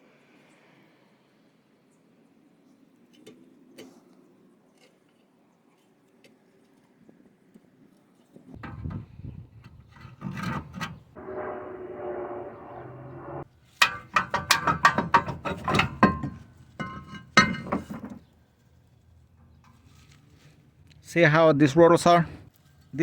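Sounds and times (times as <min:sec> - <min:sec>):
metal tools clinking: 0:13.8 - 0:18.2.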